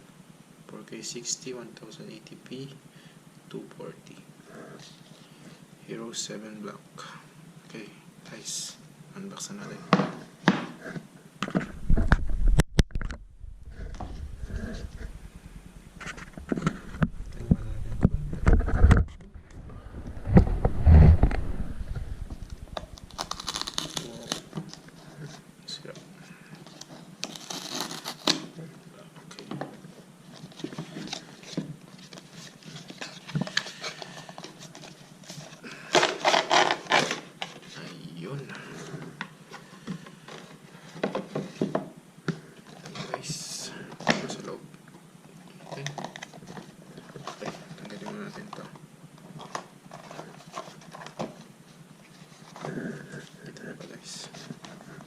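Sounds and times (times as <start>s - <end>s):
packaging rubbing and rustling: 20.1s - 25.4s, 26.6s - 28.5s, 30.2s - 38.0s.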